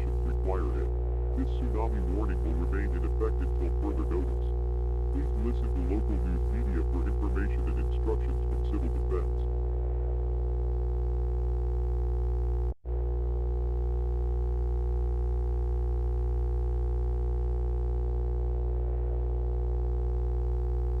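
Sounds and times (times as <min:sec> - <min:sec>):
low electronic drone: 0:00.0 - 0:10.2.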